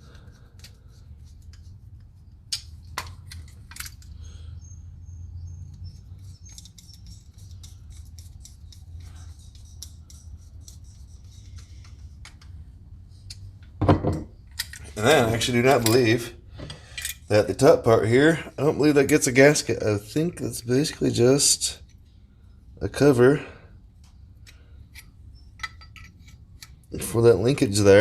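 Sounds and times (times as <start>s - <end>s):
metal parts clicking and scraping: 0.3s - 4.3s, 5.9s - 12.6s, 14.4s - 17.3s, 24.4s - 27.0s.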